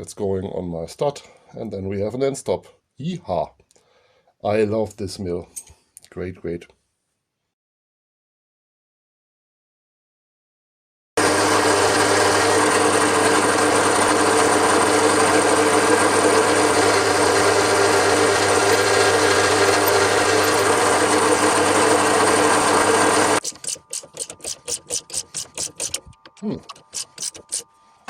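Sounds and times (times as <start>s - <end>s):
milling machine humming: 11.2s - 28.0s.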